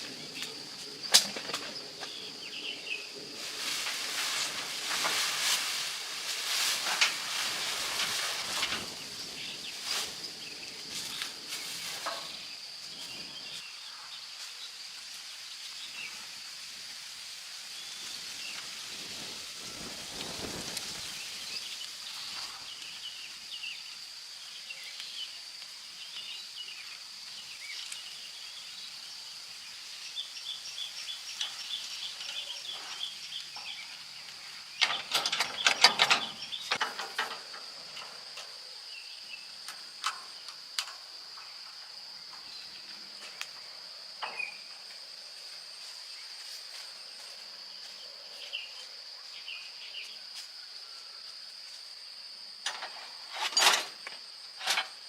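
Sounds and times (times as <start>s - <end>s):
high insect drone: 0.0s - 55.0s
hand tools clinking on metal: 34.8s - 37.6s.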